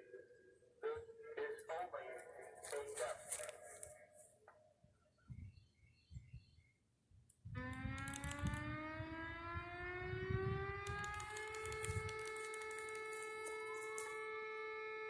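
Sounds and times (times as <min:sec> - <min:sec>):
warning siren rising in pitch: 0:07.5 - 0:15.0.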